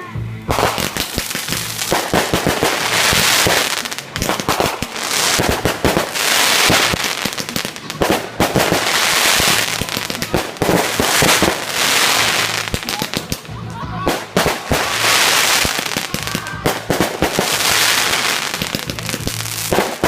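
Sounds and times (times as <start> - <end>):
fireworks hissing crackle: 0.0 - 20.0
fireworks bangs and pops: 0.4 - 20.0.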